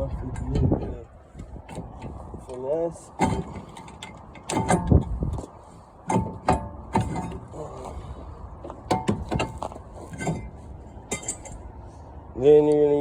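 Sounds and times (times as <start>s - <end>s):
metal clanking with ringing: 3.2s - 5.1s, 8.9s - 11.6s.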